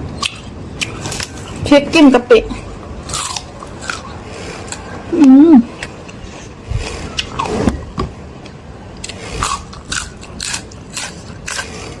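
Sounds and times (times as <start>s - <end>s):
person chewing with crunches: 3.0s - 7.7s, 9.0s - 12.0s.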